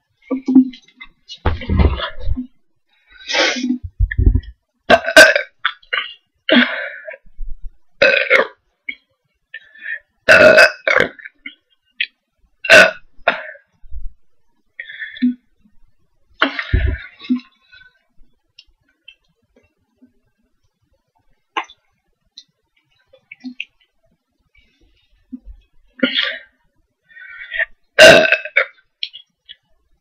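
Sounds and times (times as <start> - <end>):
person burping loudly: 3.3 - 7.2, 8.0 - 9.0, 10.2 - 11.6, 12.6 - 13.7, 16.4 - 17.5, 27.4 - 29.2.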